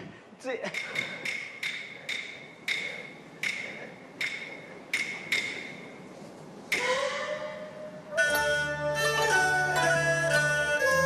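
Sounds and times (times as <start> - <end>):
ringing wood-block knocks: 0.8 - 5.8
string and wind accompaniment: 6.1 - 11.0.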